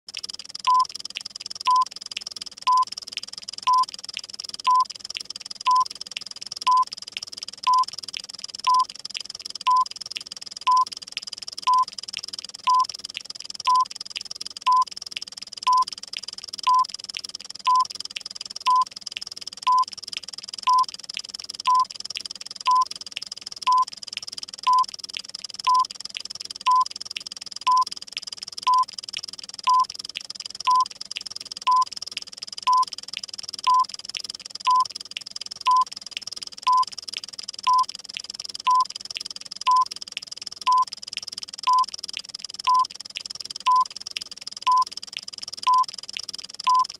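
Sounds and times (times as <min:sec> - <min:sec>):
rapid clock ticking: 0:00.1 - 0:46.9.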